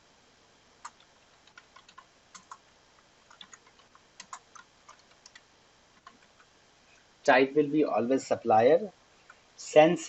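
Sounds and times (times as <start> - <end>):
keyboard typing: 0.8 - 5.4, 6.0 - 6.5.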